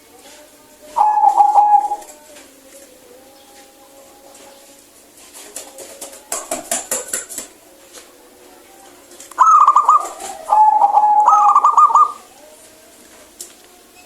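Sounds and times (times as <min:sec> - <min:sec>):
dove cooing: 0:00.9 - 0:02.2, 0:09.4 - 0:12.5.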